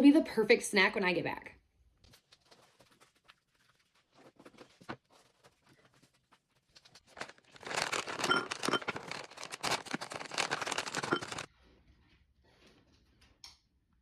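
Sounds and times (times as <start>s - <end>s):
plastic pouch crinkling: 2.2s - 11.5s.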